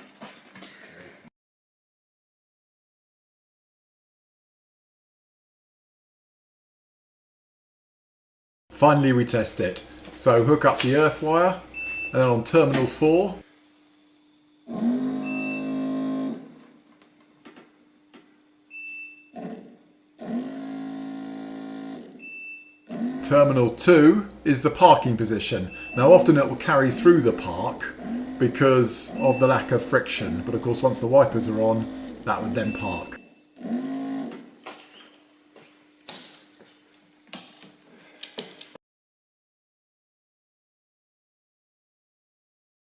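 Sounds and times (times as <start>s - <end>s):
electric wiper motor humming: 14.7s - 16.7s, 20.2s - 22.3s, 22.9s - 34.5s.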